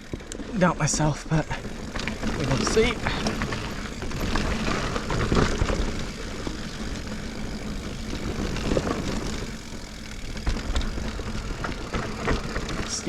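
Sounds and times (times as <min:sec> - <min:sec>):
bike knocks and rattles: 0:00.0 - 0:13.0
bike tyre rumble: 0:00.0 - 0:13.0.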